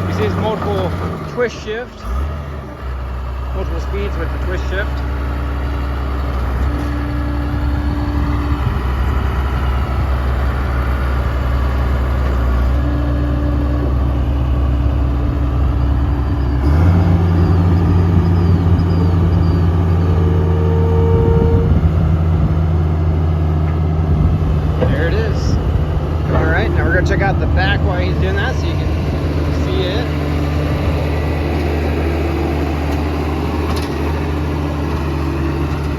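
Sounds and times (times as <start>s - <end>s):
bulldozer diesel engine running: 0.0s - 35.9s.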